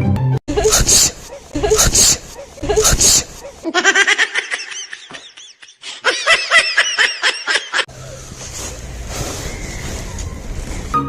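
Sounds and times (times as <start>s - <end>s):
high-pitched giggling: 0.5s - 7.9s.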